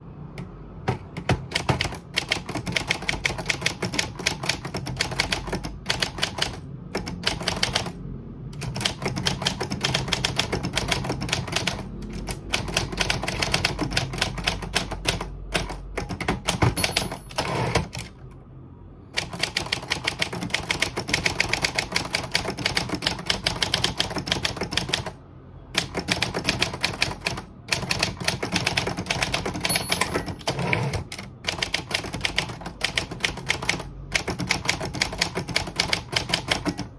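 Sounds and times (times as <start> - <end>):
typewriter key strikes: 15.7 - 18.1, 29.3 - 30.6
typewriter bell ring: 16.7 - 17.8, 29.5 - 31.0.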